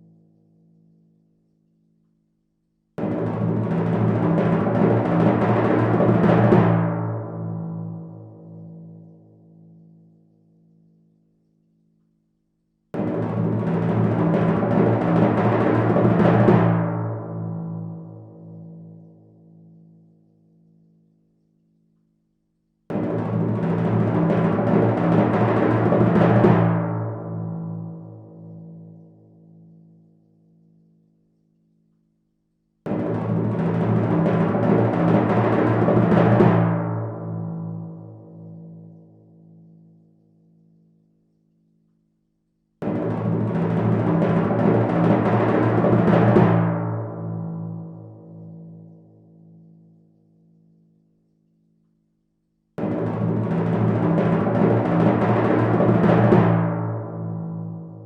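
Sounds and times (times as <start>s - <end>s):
timpani roll: 22.9s - 27.3s, 32.9s - 37.4s, 42.8s - 47.5s, 52.8s - 57.9s.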